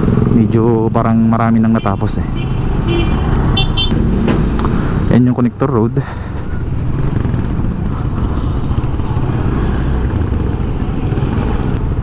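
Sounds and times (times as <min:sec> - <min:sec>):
road and traffic noise: 0:00.0 - 0:12.0
vehicle engine running: 0:06.0 - 0:12.0.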